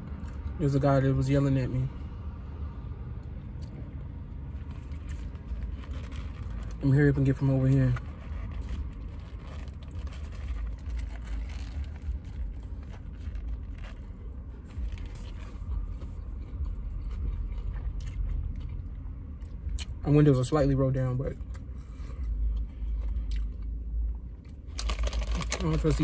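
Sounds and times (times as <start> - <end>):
car cabin rumble: 4.4 - 26.0
faint clicks and rustles: 4.5 - 6.9, 7.9 - 19.7.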